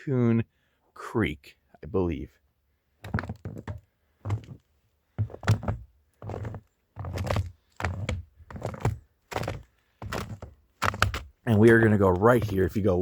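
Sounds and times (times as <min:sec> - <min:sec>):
footsteps crunching through snow: 0:05.2 - 0:13.0.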